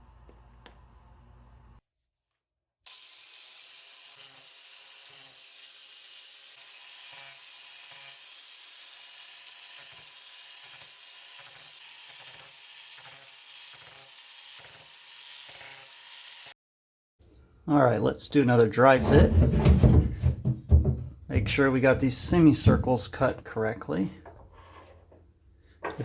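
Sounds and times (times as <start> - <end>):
small power tool cutting: 2.9 - 16.6.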